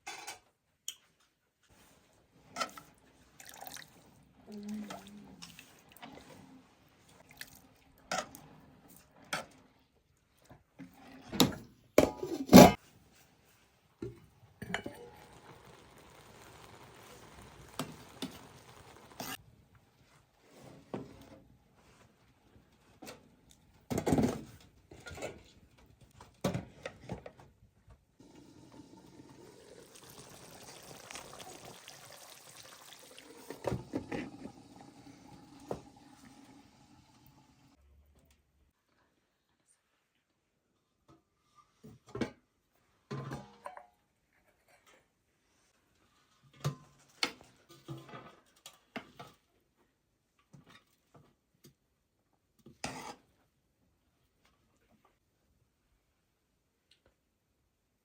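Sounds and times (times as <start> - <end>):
pots and utensils clattering: 0.0 - 0.5, 11.2 - 12.8, 14.0 - 19.4, 43.1 - 44.0
liquid being poured: 3.3 - 4.1, 14.6 - 19.4, 28.4 - 37.4.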